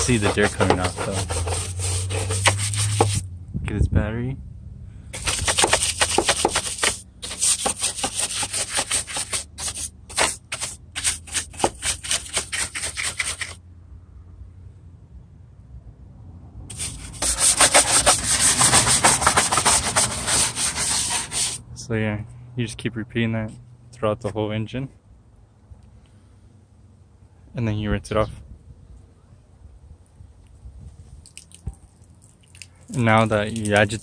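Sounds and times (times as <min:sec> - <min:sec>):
bristle brush scrubbing: 0:00.0 - 0:03.2, 0:05.2 - 0:13.6, 0:16.7 - 0:21.6.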